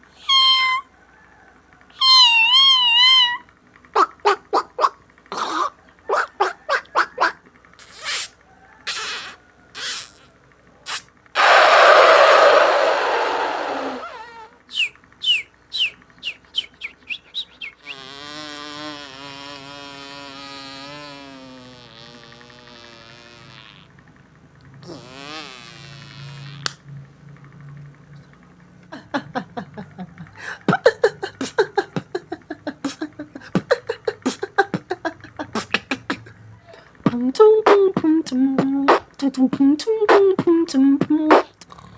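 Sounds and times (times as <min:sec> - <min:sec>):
beatbox whistle chirps: 0:06.2 - 0:11.6, 0:14.1 - 0:18.2, 0:38.9 - 0:39.1, 0:41.3 - 0:41.6
wavering hum: 0:11.4 - 0:17.9.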